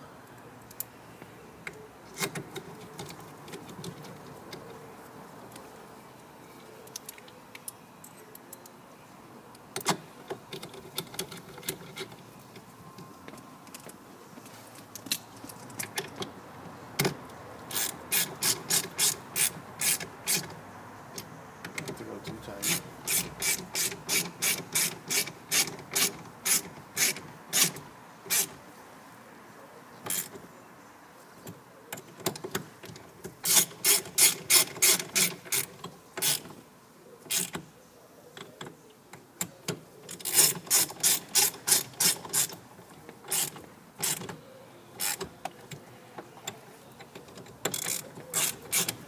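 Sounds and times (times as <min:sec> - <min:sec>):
ratchet wrench clicking: 0:17.7 - 0:20.5, 0:22.6 - 0:28.5, 0:33.4 - 0:36.4, 0:40.2 - 0:42.6, 0:47.7 - 0:49.0.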